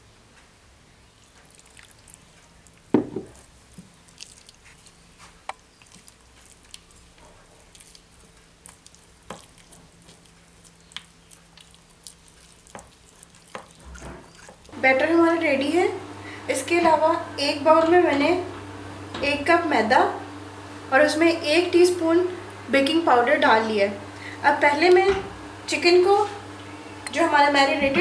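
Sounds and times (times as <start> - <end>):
batter stirred in a bowl: 1.4 - 14.7.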